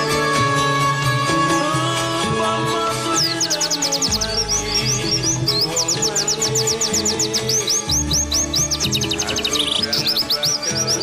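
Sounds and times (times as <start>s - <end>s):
plucked-string instrumental music: 0.0s - 11.0s
bird singing fast high trills: 3.1s - 11.0s.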